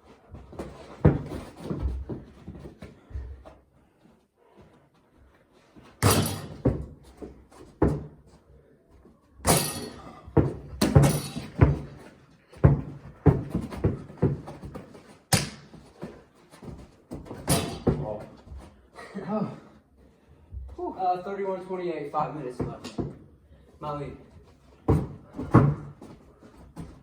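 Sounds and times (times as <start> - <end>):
basketball bouncing and hitting things: 0.4 - 2.8, 6.0 - 8.3, 9.4 - 18.4, 22.6 - 23.2, 24.8 - 27.0.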